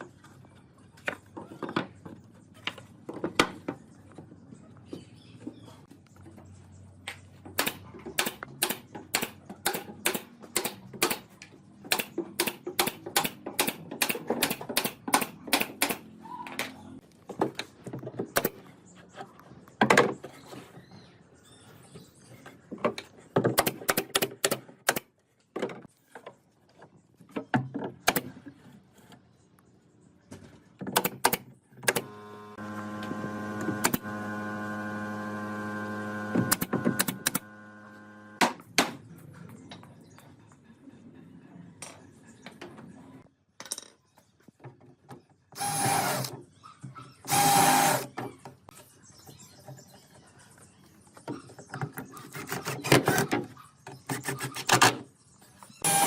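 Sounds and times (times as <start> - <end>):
small electric motor humming: 32.0 - 38.4.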